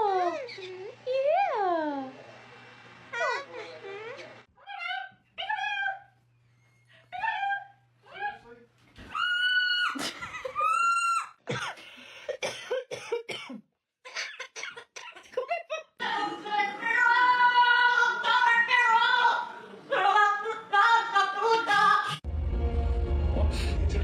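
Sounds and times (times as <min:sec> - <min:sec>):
parrot calling: 0:00.2 - 0:01.0.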